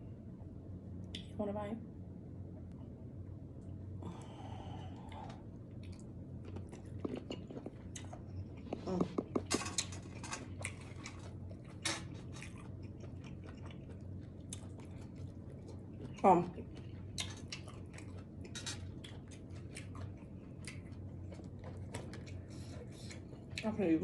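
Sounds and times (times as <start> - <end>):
person chewing shrimp: 5.0 - 23.6.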